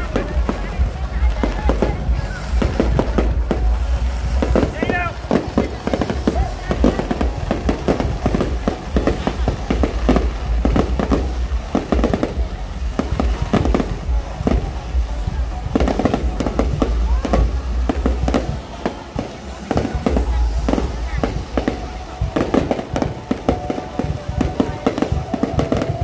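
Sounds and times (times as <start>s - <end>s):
deep low rumble: 0.0s - 18.4s
fireworks bangs and crackles: 0.0s - 26.0s.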